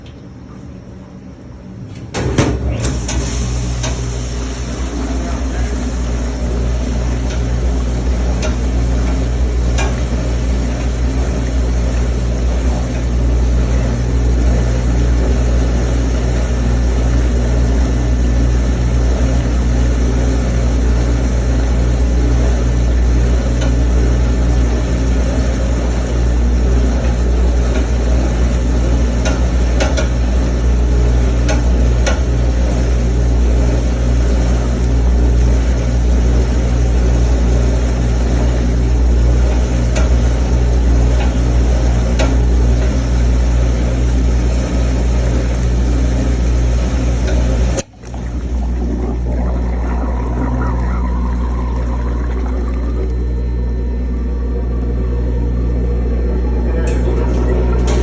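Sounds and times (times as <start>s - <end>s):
dishwasher motor hum: 0.0s - 58.0s.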